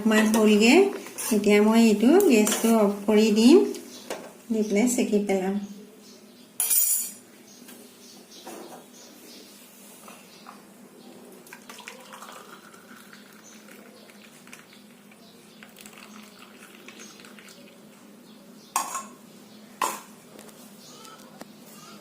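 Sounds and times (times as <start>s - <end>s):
liquid pouring: 11.4s - 17.9s
pots and utensils clinking: 18.7s - 19.2s.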